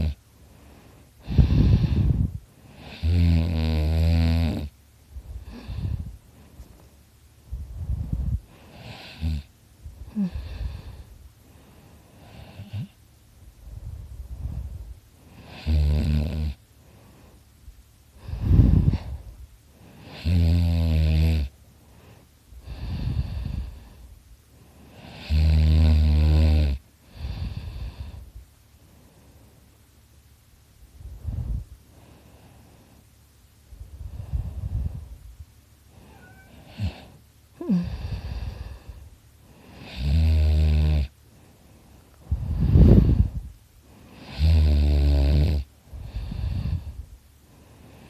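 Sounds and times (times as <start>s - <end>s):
man snoring loudly: 2.8s - 4.7s, 8.7s - 9.5s, 15.4s - 16.6s, 20.0s - 21.5s, 25.0s - 28.1s, 39.7s - 41.1s, 44.2s - 46.9s.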